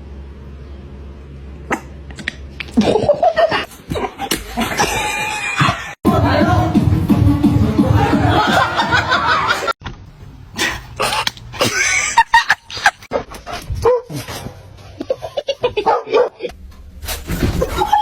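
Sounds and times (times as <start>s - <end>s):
dog barking and yipping: 13.1s - 14.6s, 15.7s - 16.5s.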